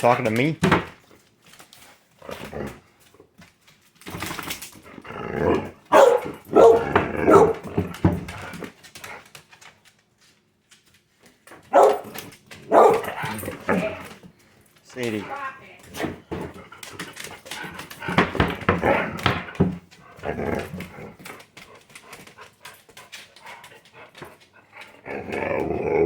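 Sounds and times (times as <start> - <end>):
dog making drawn-out vocal sounds: 5.3 - 8.2
dog barking: 5.9 - 7.6, 11.7 - 13.4.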